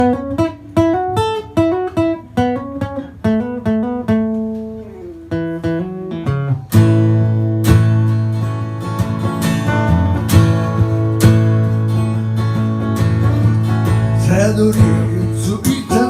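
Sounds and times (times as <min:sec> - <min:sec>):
acoustic guitar picking: 0:00.0 - 0:16.0
bass: 0:04.7 - 0:16.0.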